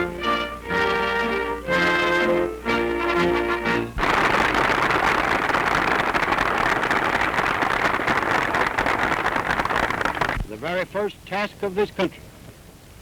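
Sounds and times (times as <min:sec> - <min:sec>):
music: 0:00.0 - 0:04.0
loud crackling hiss: 0:04.0 - 0:10.6.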